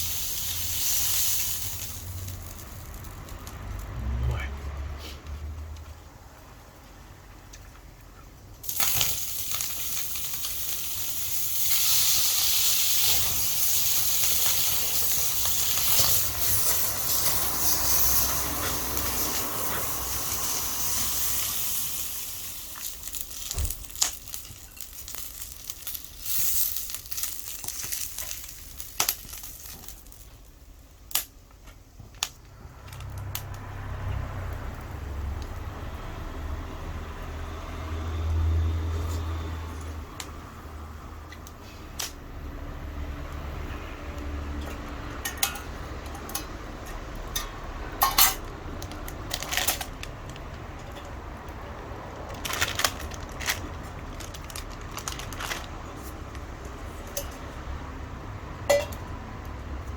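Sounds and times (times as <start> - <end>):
food sizzling in frying pan: 0.0 - 3.6, 8.6 - 30.7
sharp crackles and pops: 0.0 - 4.0, 7.5 - 36.0, 46.0 - 57.2.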